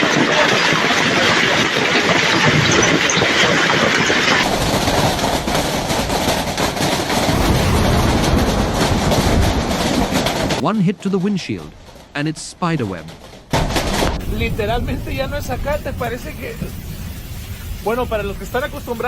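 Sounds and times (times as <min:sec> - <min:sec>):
hailstones pelting down: 0:00.0 - 0:10.6, 0:12.9 - 0:19.0
low rumble: 0:04.4 - 0:10.6.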